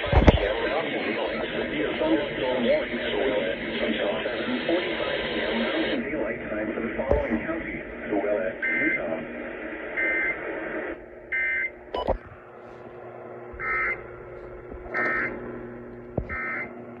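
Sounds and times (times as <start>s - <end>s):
radio hiss and hum: 0.0s - 17.0s
buzzy digital data bursts: 13.6s - 14.1s, 14.8s - 16.7s.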